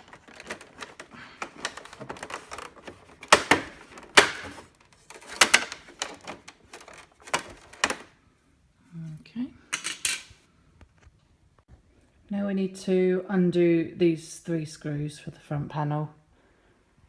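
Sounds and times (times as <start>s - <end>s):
plastic printer parts clicking: 0.0s - 8.1s.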